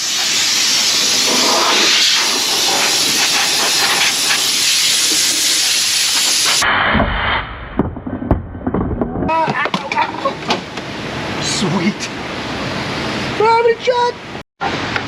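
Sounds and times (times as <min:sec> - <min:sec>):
spraying jet hissing: 0:00.0 - 0:06.6.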